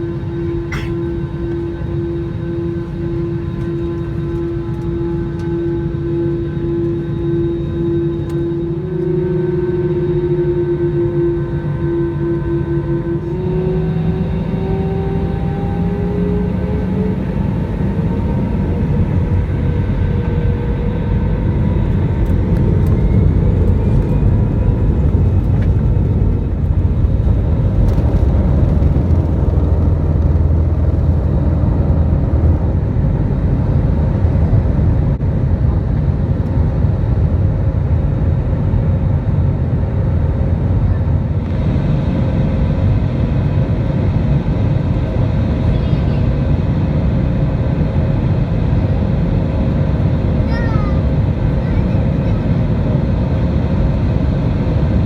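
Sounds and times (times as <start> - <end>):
airplane cabin engine rumble: 0.0 - 55.0
faint rising whine: 5.6 - 34.3.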